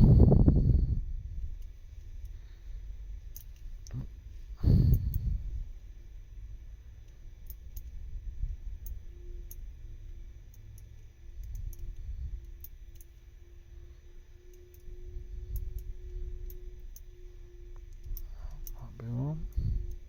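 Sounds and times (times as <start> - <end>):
low rumble: 0.0 - 20.0
padlock wheels clicking: 3.2 - 4.0, 7.0 - 8.1, 10.4 - 20.0.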